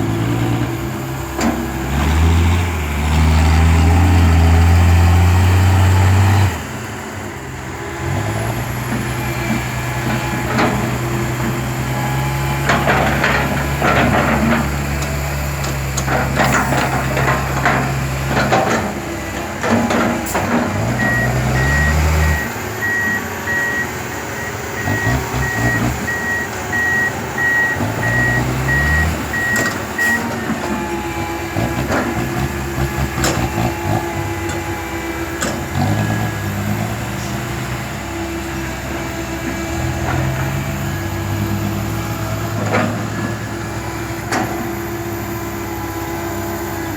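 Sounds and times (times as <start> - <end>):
diesel machinery engine revving: 0.0 - 46.9
reversing alarm beeping: 21.0 - 31.5.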